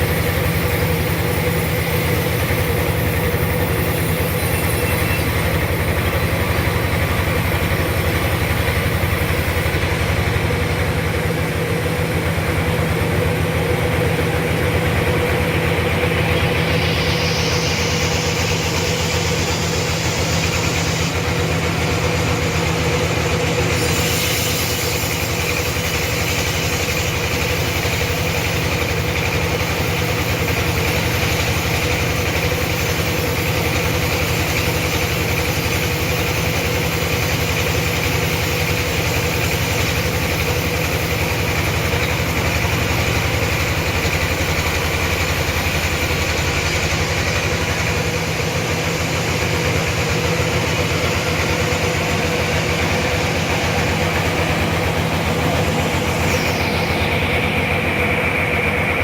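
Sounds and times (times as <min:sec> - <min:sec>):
sawmill machinery humming: 0:00.0 - 0:59.0.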